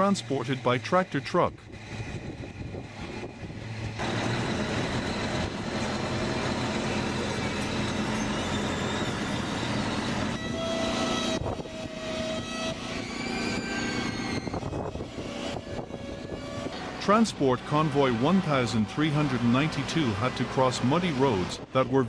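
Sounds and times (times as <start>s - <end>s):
road noise: 0.0s - 22.0s
truck engines under load: 0.0s - 22.0s
steady horn tone: 8.2s - 20.3s.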